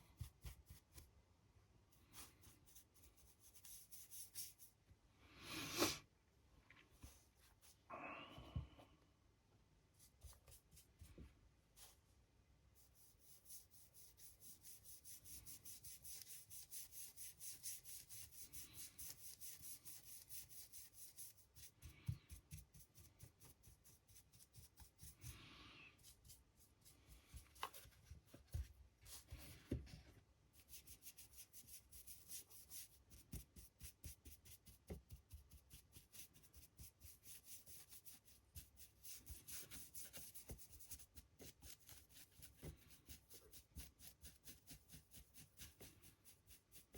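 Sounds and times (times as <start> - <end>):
paintbrush scratchy strokes: 2.0 - 4.8, 12.8 - 28.4, 30.6 - 46.9.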